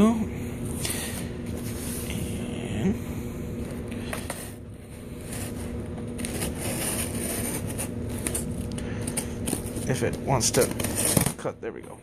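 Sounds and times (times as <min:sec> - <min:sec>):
knife cutting cardboard: 0:04.2 - 0:08.5, 0:09.1 - 0:11.5.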